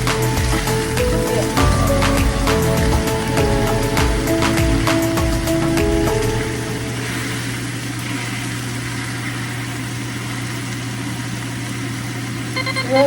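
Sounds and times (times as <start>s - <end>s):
low hum: 0.0s - 8.6s.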